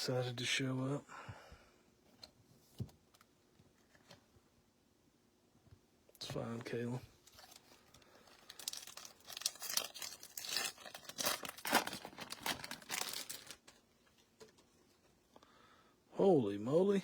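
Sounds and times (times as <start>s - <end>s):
foil wrapper tearing and crinkling: 7.2s - 13.8s.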